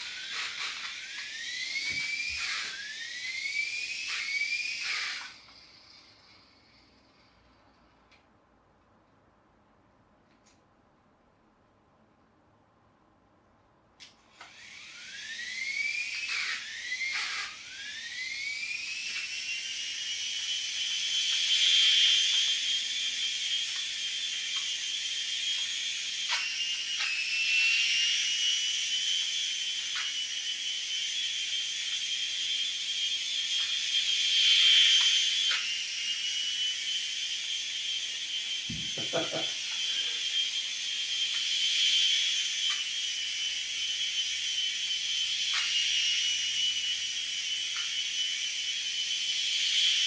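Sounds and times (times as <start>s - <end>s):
small electric motor whining: 0.0s - 7.8s, 14.2s - 50.0s
click: 10.3s - 10.7s.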